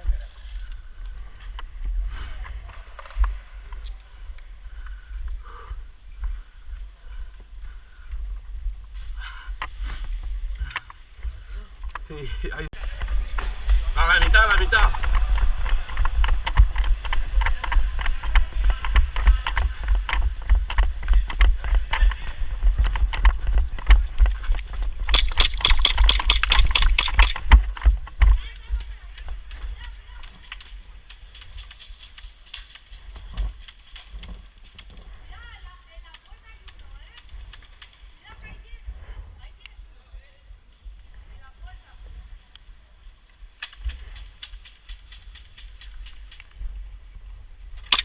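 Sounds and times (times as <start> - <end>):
running footsteps and rattling gear: 0.0 - 38.8, 43.4 - 48.0
wind buffeting microphone: 0.0 - 42.5
sharp clicks: 25.0 - 33.0.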